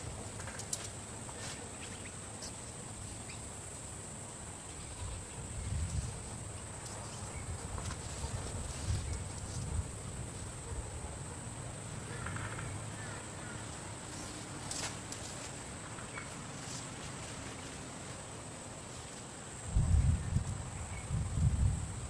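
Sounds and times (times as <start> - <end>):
steady hiss: 0.0 - 22.0
wind gusts buffeting microphone: 4.8 - 11.8, 19.6 - 22.0.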